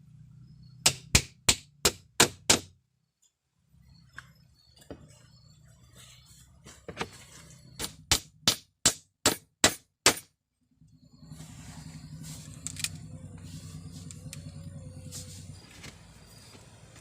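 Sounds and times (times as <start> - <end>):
tool striking wood: 0.8 - 2.8, 7.8 - 10.3.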